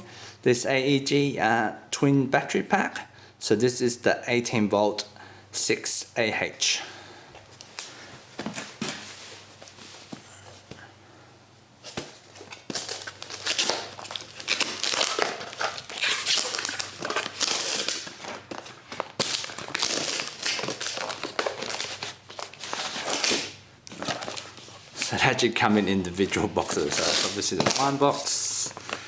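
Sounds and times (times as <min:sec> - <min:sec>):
packaging crinkling and tearing: 0:11.8 - 0:29.0.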